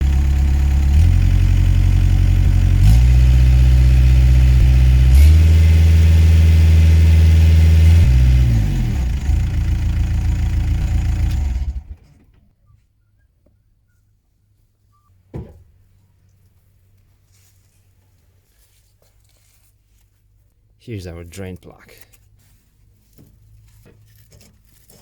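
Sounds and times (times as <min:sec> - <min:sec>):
diesel engine running: 0:00.0 - 0:12.4.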